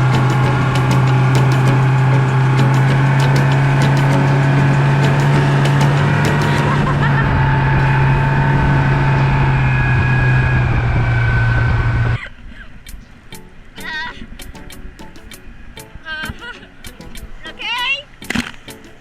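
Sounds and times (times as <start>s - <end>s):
motorboat engine humming: 0.0s - 12.2s.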